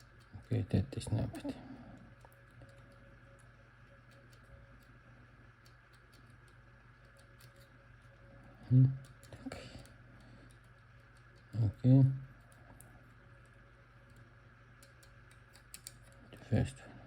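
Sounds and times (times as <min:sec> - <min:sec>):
steady low hum: 0:00.0 - 0:17.0
small clicks of lock picking: 0:14.8 - 0:16.2.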